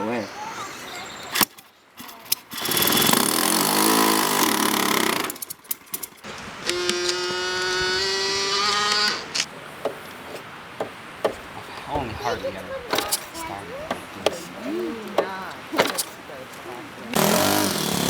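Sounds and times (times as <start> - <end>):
model airplane engine running: 2.1 - 5.6, 6.7 - 9.4, 12.8 - 18.0.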